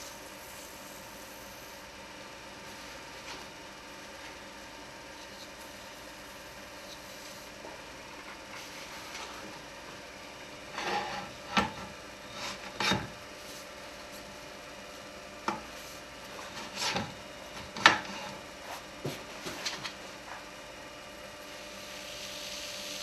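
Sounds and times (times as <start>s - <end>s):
tool scraping spinning wood: 10.6s - 14.3s, 15.5s - 20.4s.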